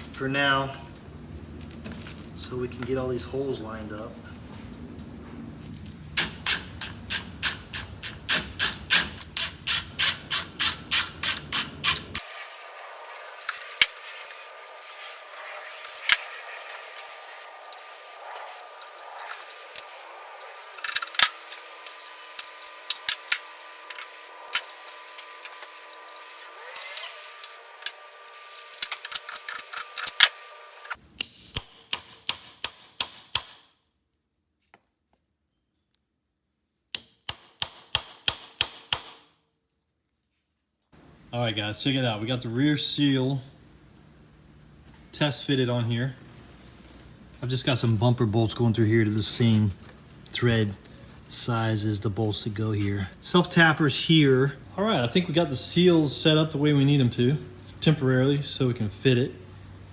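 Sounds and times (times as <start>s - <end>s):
hand tools clicking on metal: 6.2s - 12.3s, 13.4s - 33.6s.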